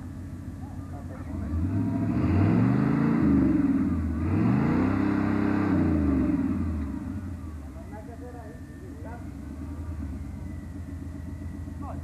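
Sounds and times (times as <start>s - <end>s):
engine revving: 1.2s - 7.6s.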